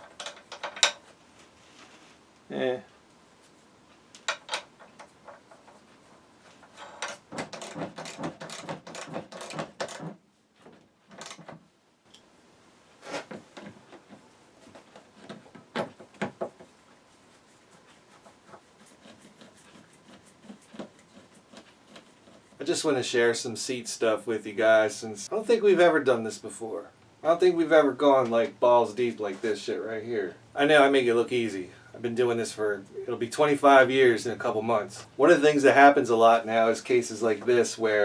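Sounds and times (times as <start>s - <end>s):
hand tools clicking and clunking: 0.0s - 1.1s, 4.2s - 5.9s, 6.6s - 11.6s.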